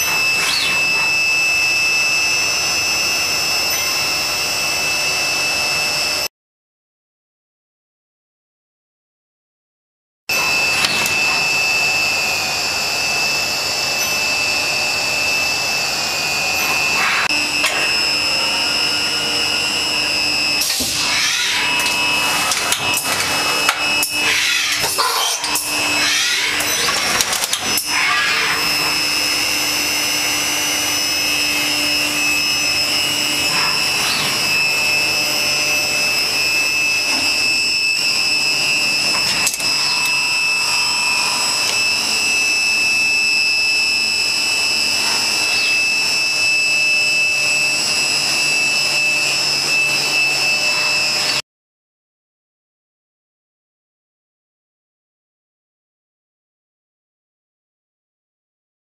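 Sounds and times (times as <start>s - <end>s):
machining centre whining: 0.0s - 6.3s, 10.3s - 51.4s
higher tone: 27.8s - 51.4s.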